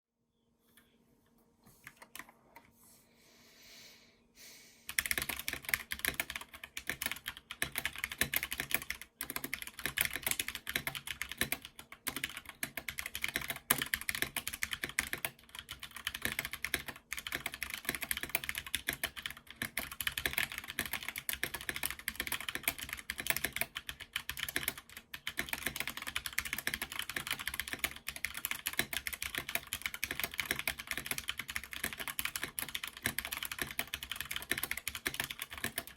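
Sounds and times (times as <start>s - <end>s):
fast mechanical keyboard typing: 4.9s - 35.9s.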